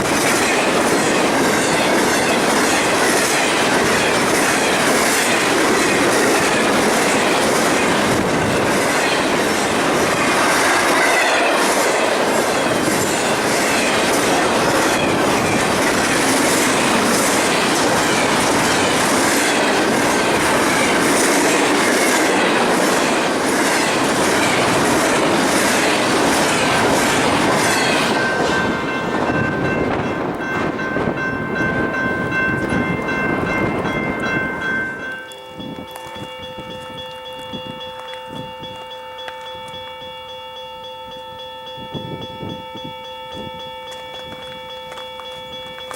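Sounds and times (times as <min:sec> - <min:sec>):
train wheels clattering over rail joints: 0:00.0 - 0:34.9.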